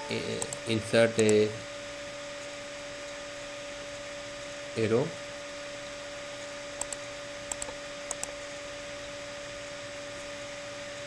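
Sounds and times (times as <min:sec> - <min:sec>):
steady hiss and electrical hum: 0:00.0 - 0:11.0
computer mouse clicks: 0:00.4 - 0:01.4, 0:06.8 - 0:08.4.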